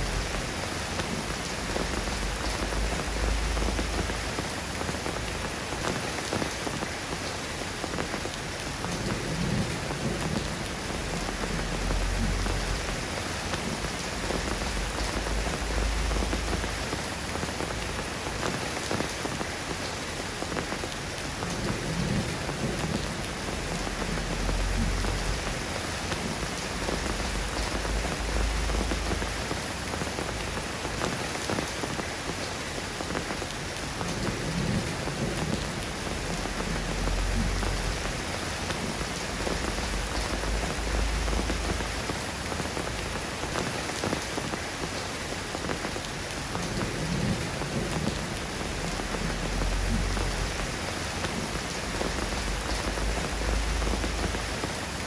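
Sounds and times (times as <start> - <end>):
rain pattering on surfaces: 0.0 - 55.0
low rumble: 23.4 - 29.5, 36.1 - 42.1.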